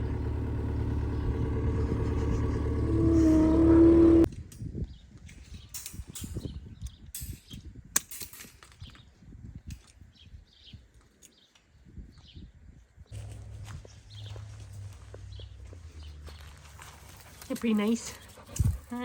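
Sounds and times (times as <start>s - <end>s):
farm machine engine under load: 0.0s - 4.3s, 13.2s - 18.8s.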